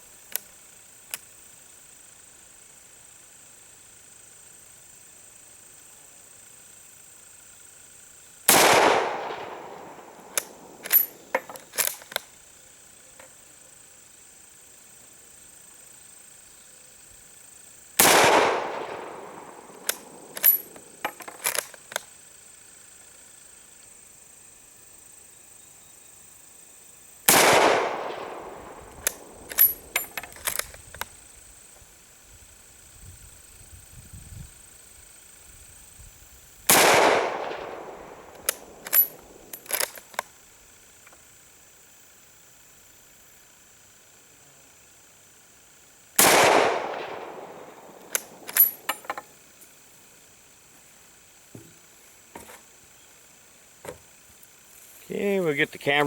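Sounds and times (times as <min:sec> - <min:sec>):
rifle shot echoing: 0:08.5 - 0:11.9, 0:18.0 - 0:21.6, 0:27.3 - 0:30.6, 0:36.7 - 0:39.7, 0:46.2 - 0:49.0
rifle bolt clicking: 0:10.2 - 0:12.3, 0:19.6 - 0:22.0, 0:28.9 - 0:31.1, 0:38.3 - 0:40.2, 0:48.0 - 0:49.2.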